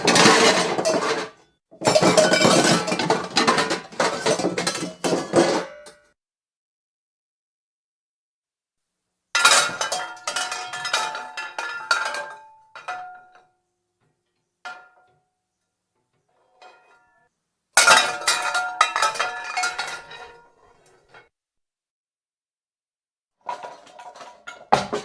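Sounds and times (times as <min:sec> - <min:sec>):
pots and pans clattering: 0:00.0 - 0:06.0, 0:09.4 - 0:13.4, 0:17.8 - 0:21.2, 0:23.4 - 0:25.0.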